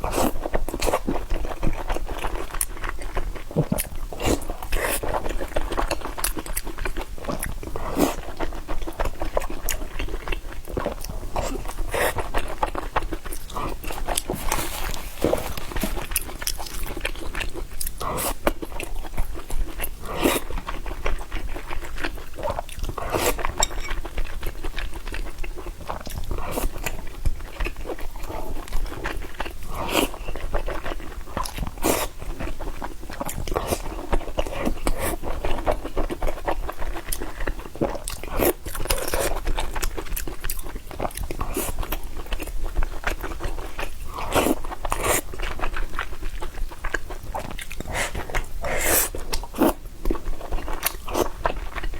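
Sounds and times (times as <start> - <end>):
person chewing and biting food: 9.0 - 25.2.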